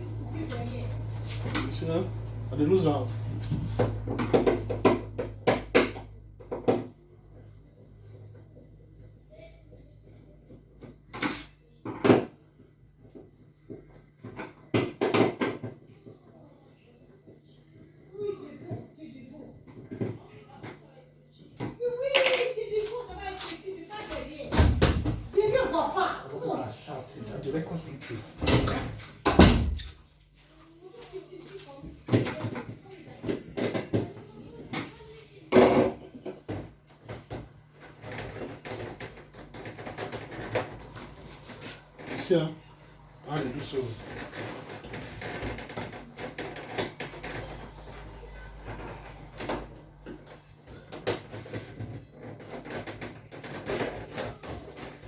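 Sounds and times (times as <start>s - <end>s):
knocks and clatter of parts: 3.4s - 7.5s, 10.1s - 16.2s, 28.0s - 30.1s, 31.8s - 42.4s, 43.4s - 55.0s.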